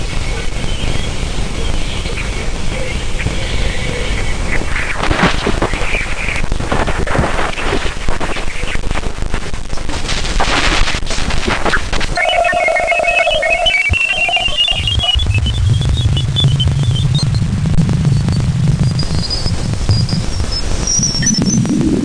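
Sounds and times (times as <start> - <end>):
hissing static with bursts: 0.0 - 22.0
low hum: 12.1 - 20.3
steady tone: 12.2 - 17.1
chirping tones rising in pitch: 12.2 - 17.4.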